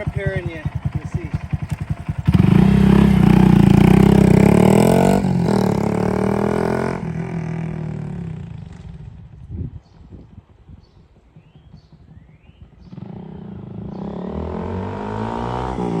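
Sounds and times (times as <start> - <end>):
motorcycle engine revving: 0.0 - 10.0, 11.3 - 16.0.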